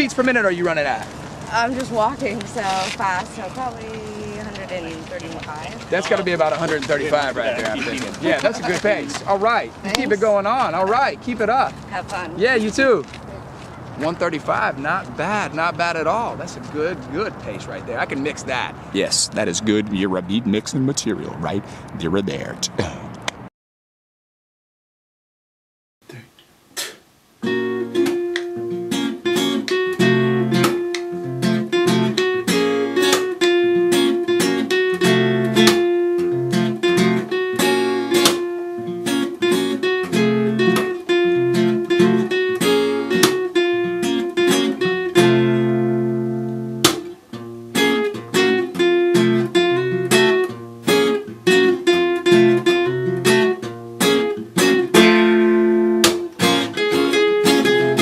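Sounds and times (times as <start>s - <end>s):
plucked acoustic guitar music: 0.0s - 22.8s, 27.4s - 58.0s.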